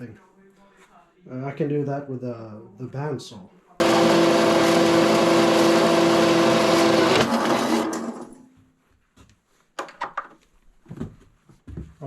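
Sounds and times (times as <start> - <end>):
bandsaw running and winding down: 3.8 - 8.4.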